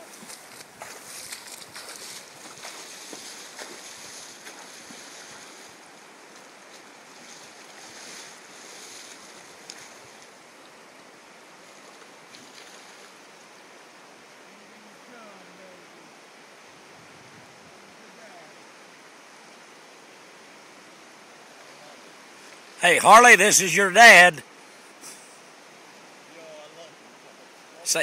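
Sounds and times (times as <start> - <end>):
fast-flowing river rushing: 17.9 - 24.5, 27.1 - 28.0.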